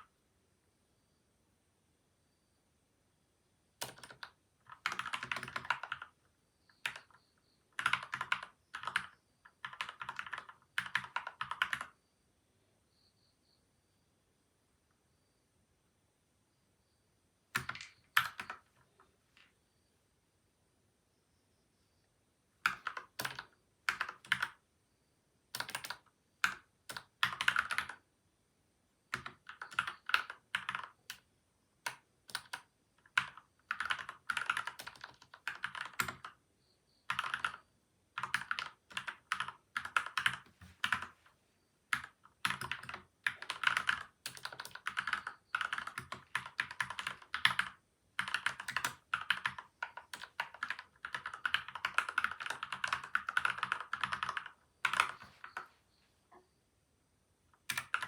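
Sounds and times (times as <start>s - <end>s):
mechanical keyboard typing: 3.8s - 7.2s, 7.8s - 11.9s, 17.6s - 18.7s, 22.6s - 24.6s, 25.5s - 28.0s, 29.1s - 31.2s, 31.8s - 36.4s, 37.1s - 37.6s, 38.2s - 41.2s, 41.9s - 55.7s, 57.6s - 58.0s.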